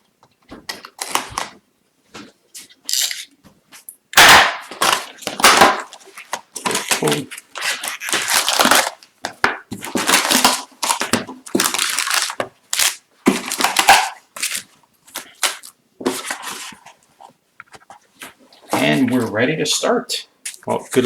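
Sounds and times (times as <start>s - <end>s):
plastic wrapping crinkling and tearing: 0.7s - 1.6s, 4.2s - 16.9s.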